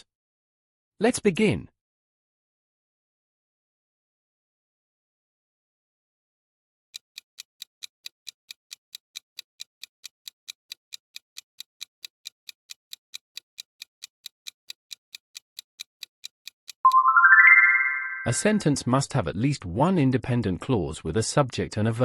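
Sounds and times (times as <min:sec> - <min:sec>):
countdown timer ticking: 0:07.6 - 0:18.9.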